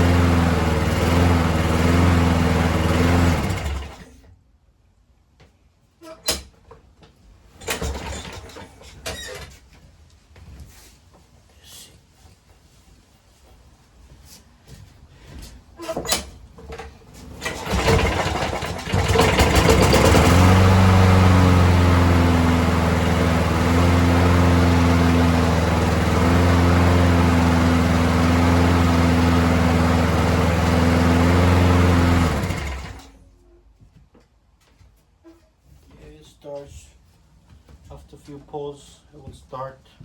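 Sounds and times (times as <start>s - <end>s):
lawn mower engine running: 0.0s - 4.1s, 17.3s - 33.2s
starter cord being pulled: 17.4s - 20.9s, 30.7s - 33.1s.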